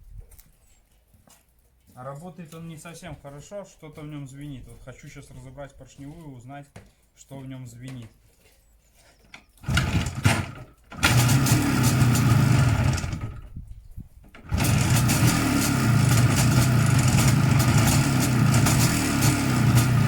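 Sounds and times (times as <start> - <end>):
two-stroke motorcycle engine running: 9.6 - 13.5, 14.3 - 20.0
noisy primary chain: 9.7 - 13.3, 14.4 - 20.0
engine ringing knock: 14.5 - 20.0.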